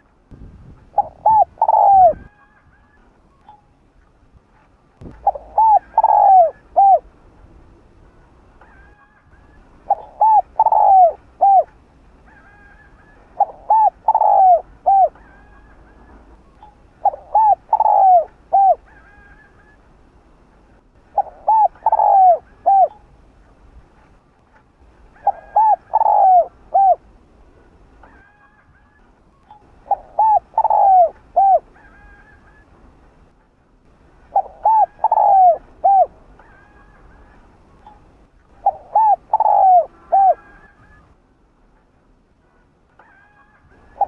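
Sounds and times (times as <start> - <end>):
dove cooing: 0.8 - 3.6, 5.0 - 7.2, 8.5 - 19.8, 21.1 - 23.1, 25.1 - 27.1, 29.6 - 32.7, 34.2 - 41.2, 43.1 - 44.0.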